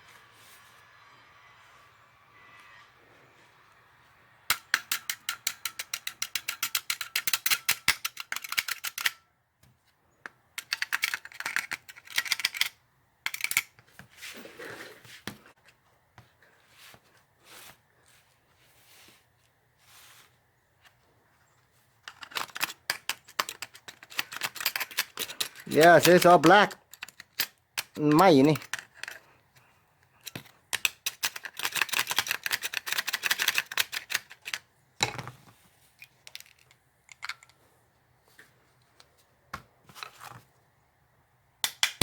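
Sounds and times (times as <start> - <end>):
screwdriver scraping metal contacts: 4.5 - 9.2, 13.3 - 13.7, 22.1 - 29.3, 30.1 - 34.6.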